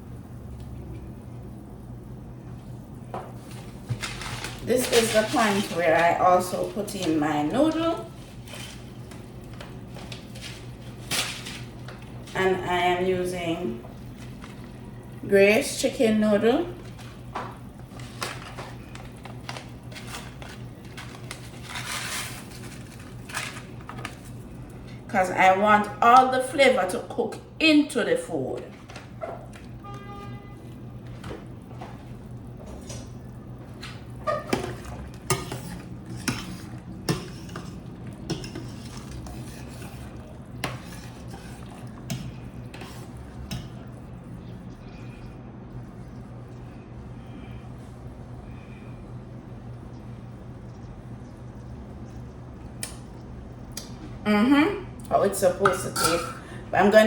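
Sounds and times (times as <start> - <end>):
steady low hum: 0.0 - 57.0
spoon stirring soup: 33.8 - 44.0.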